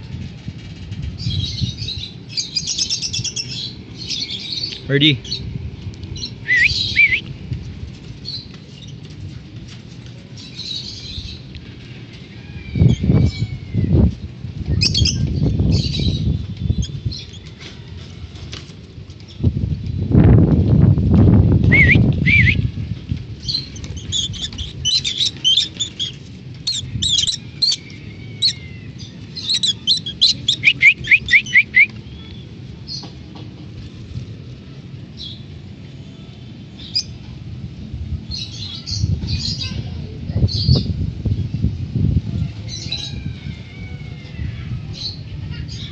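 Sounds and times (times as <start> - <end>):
lovebirds chirping and squawking: 1.1 - 5.5, 6.2 - 7.2, 12.3 - 17.7, 21.6 - 33.1
sharp high chirps: 29.6 - 31.9.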